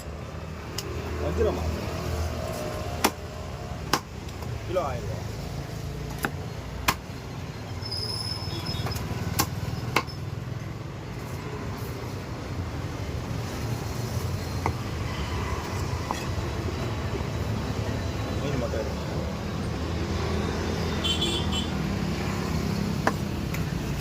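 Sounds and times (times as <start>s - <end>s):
road traffic rumble: 0.0s - 24.0s
cleaver chopping fish on block: 2.9s - 4.5s, 6.1s - 7.1s, 8.9s - 10.2s.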